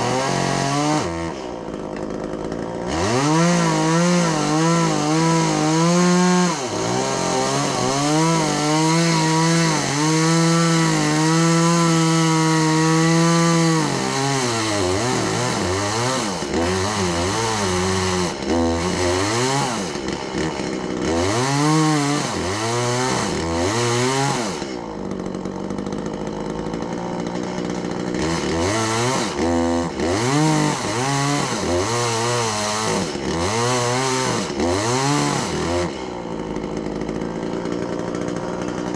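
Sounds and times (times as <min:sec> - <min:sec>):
chainsaw revving: 0:00.0 - 0:38.9.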